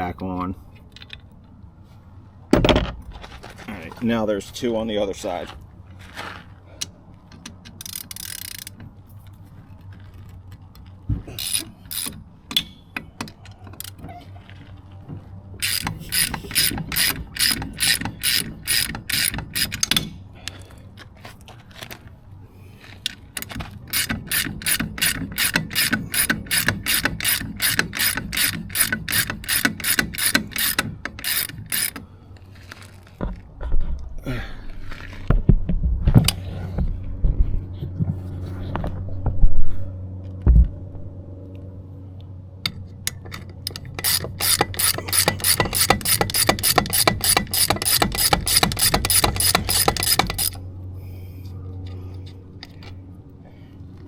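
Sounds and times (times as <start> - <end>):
ratchet wrench clicking: 7.7 - 8.8, 11.4 - 12.2, 15.6 - 20.1, 23.4 - 32.0, 43.1 - 50.6.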